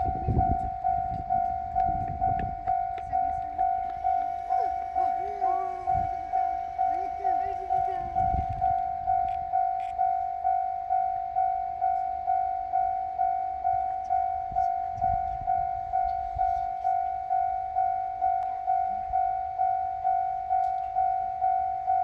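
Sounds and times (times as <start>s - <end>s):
low rumble: 0.0s - 10.0s
level crossing warning bell: 0.0s - 22.0s.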